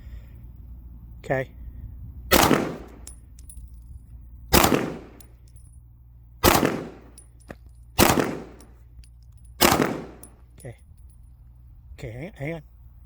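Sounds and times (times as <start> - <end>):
gunshots with echo: 2.3 - 3.0, 4.5 - 5.2, 6.4 - 7.2, 8.0 - 8.6, 9.6 - 10.2.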